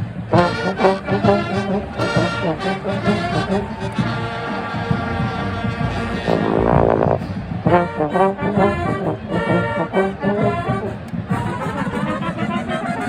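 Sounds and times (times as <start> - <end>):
marching band brass playing: 0.0 - 13.0.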